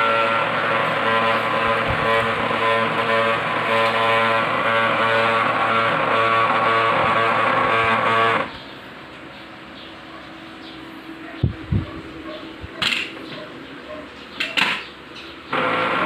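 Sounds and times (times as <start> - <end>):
printer grinding: 0.0 - 8.8, 14.4 - 16.0.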